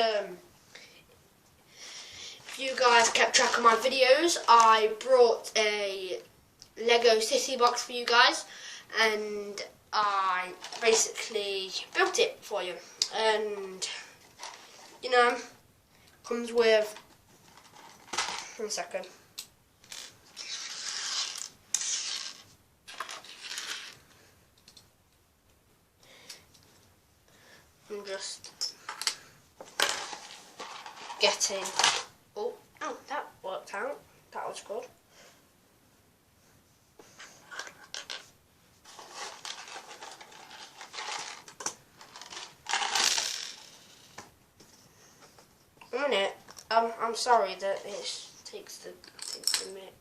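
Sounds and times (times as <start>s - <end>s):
rustling and scraping of objects: 1.9s - 4.8s, 10.2s - 24.8s, 26.2s - 32.2s, 36.4s - 49.9s
plastic toy bricks clicking and rattling: 39.0s - 43.8s.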